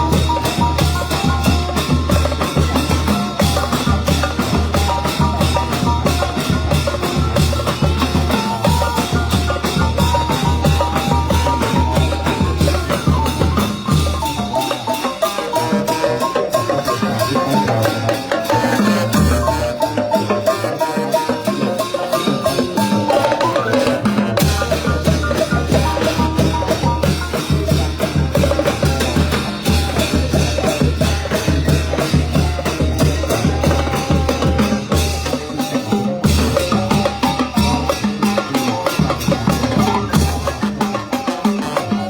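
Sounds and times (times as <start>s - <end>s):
bass drum beating: 0.0s - 14.3s, 24.4s - 35.2s
brass band playing: 0.0s - 42.0s.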